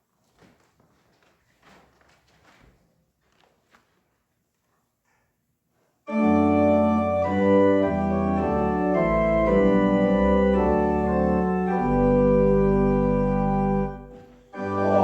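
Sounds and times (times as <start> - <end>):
church organ playing hymn chords: 6.1 - 15.0.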